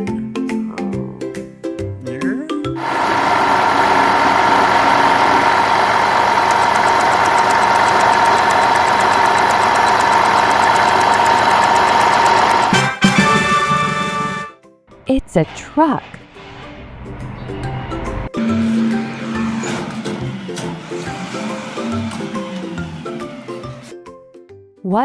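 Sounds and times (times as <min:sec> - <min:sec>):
fast even ticking: 0:02.8 - 0:12.8
truck engine running: 0:02.8 - 0:12.8.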